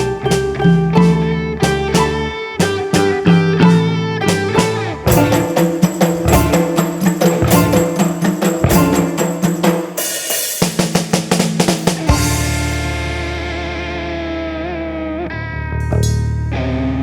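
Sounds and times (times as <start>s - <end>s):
plucked-string melody: 0.0s - 10.3s, 11.4s - 17.0s
percussion strokes: 0.0s - 13.6s.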